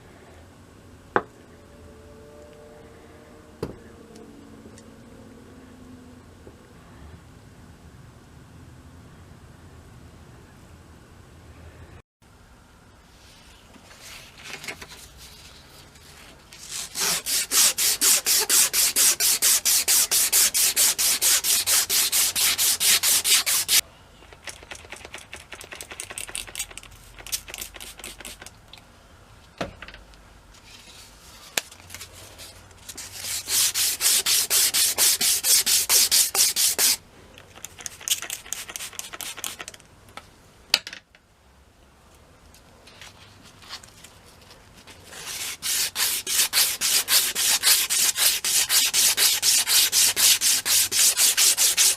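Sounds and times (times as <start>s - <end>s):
hand sanding rubbing: 16.6s - 23.8s, 32.2s - 37.0s, 37.8s - 39.7s, 45.0s - 51.9s
scattered scrapes: 43.0s - 51.9s.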